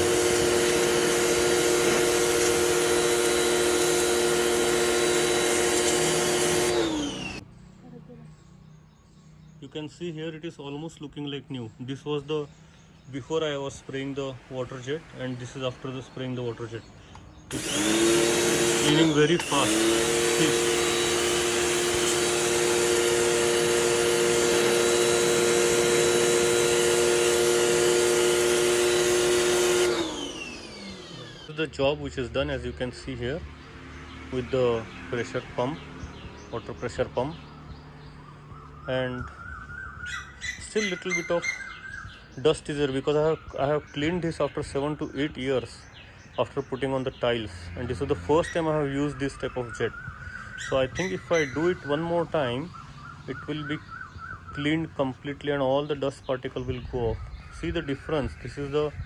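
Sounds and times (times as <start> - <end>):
water jet hissing: 0.0 - 7.3
pressure washer running: 0.0 - 7.4, 17.5 - 31.9, 50.9 - 52.0.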